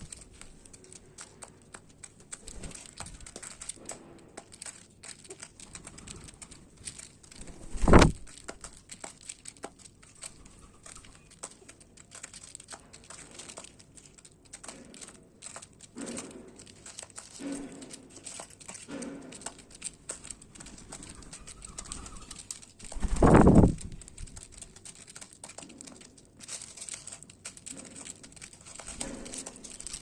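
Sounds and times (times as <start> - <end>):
birds pecking and cracking seed: 0.0 - 30.0
low bird coos: 10.4 - 11.3, 20.8 - 22.5.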